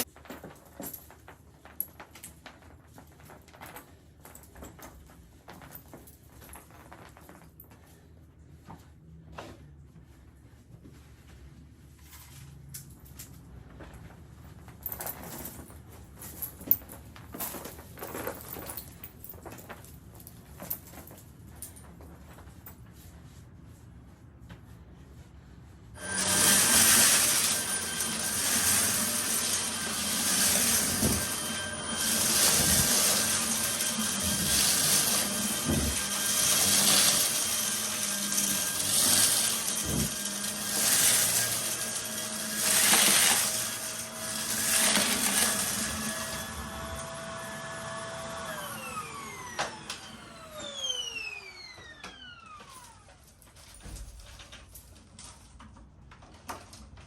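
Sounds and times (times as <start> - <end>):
vacuum cleaner motor whine: 26.0 - 53.2.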